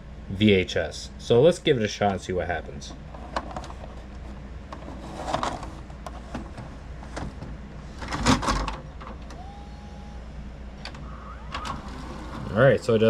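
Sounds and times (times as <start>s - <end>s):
loading motor whine: 2.9s - 13.0s
vcr loading mechanism clunk: 4.7s - 9.6s, 10.8s - 12.6s.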